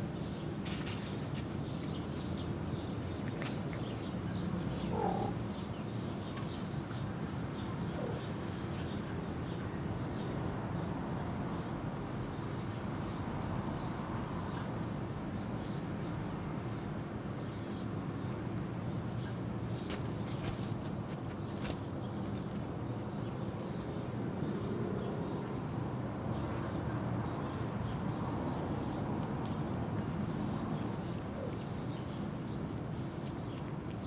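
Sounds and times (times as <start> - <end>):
birds chirping: 1.0 - 8.7.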